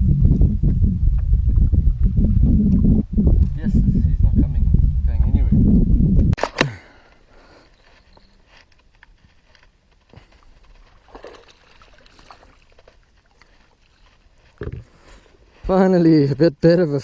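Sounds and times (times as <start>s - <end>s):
small water splashes: 10.8s - 14.1s.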